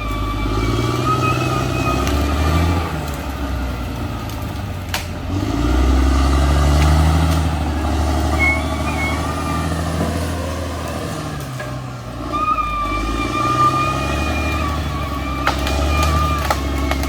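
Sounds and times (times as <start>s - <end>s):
short high squeals: 0.0s - 3.0s, 8.2s - 10.0s, 12.3s - 17.0s
bulldozer diesel engine under load: 0.0s - 17.0s.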